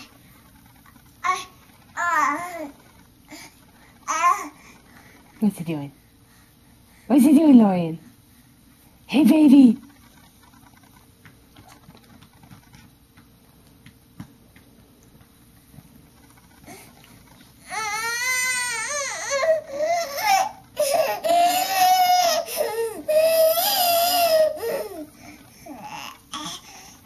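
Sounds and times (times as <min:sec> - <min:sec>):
baby making high-pitched noises: 0:04.0 - 0:04.6
baby wavering calls: 0:17.6 - 0:27.0.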